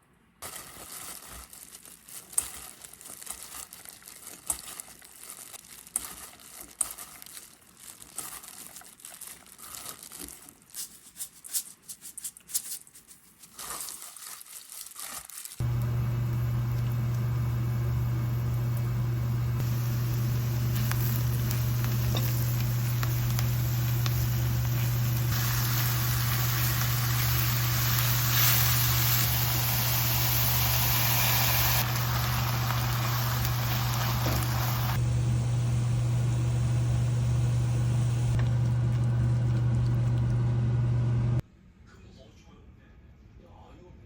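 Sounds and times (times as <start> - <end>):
low mechanical hum: 15.6 - 41.4
hiss: 22.6 - 35.0.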